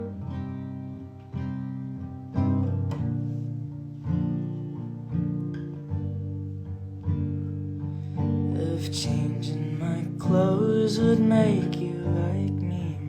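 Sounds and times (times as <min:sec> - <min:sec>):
acoustic guitar chords: 0:00.0 - 0:13.0.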